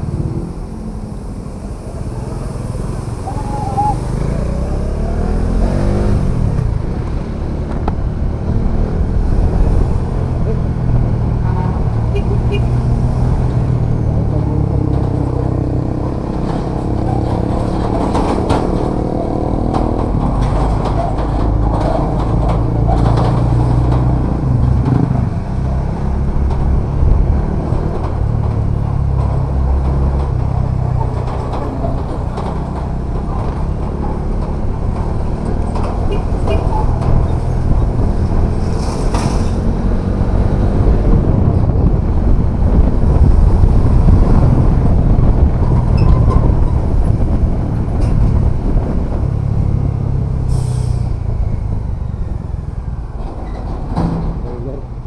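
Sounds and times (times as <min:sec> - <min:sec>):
wind rushing: 0:00.0 - 0:21.6, 0:34.5 - 0:52.6
road noise: 0:00.0 - 0:55.0
motorcycle engine running: 0:24.1 - 0:50.2.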